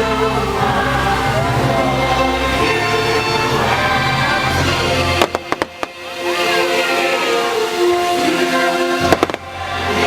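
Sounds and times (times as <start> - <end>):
held orchestral notes: 0.0 - 10.0.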